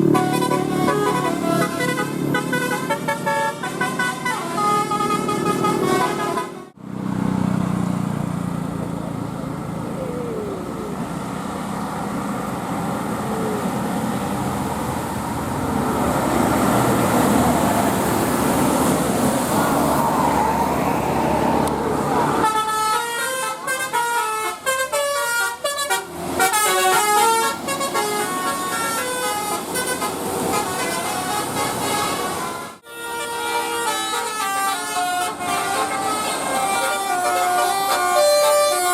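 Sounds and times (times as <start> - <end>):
multi-tone bus horn melody: 0.0 - 6.8, 22.2 - 38.9
bus engine: 0.0 - 38.9
traffic noise: 0.0 - 38.9.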